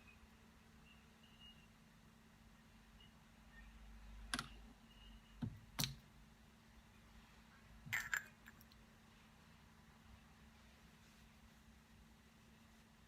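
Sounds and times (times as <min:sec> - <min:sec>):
hard objects clicking and knocking: 0:07.9 - 0:08.8.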